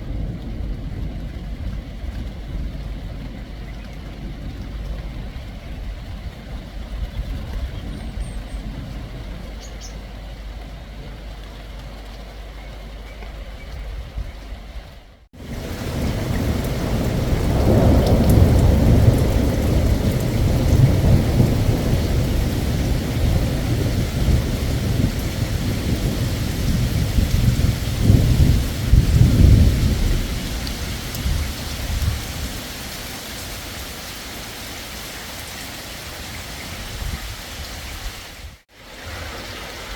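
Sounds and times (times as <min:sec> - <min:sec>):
rolling thunder: 0:00.0 - 0:11.1, 0:15.4 - 0:33.5
steady rain: 0:00.0 - 0:39.9.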